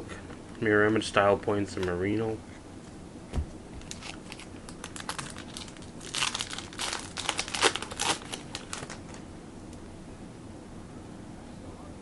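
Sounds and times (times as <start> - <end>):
plastic wrapper crinkling and tearing: 3.8 - 9.2.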